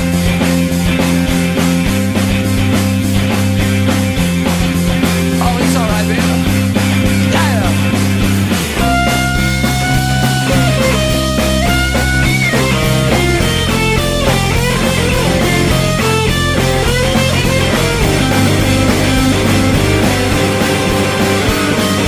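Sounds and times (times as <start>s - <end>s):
bass guitar: 0.0s - 22.0s
driving drums: 0.0s - 22.0s
rhythm guitar: 0.0s - 22.0s
electric guitar solo: 8.7s - 22.0s.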